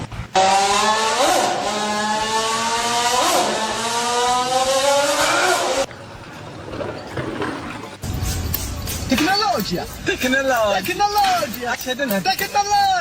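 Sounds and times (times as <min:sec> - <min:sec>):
vehicle engine running hard: 0:00.0 - 0:05.9.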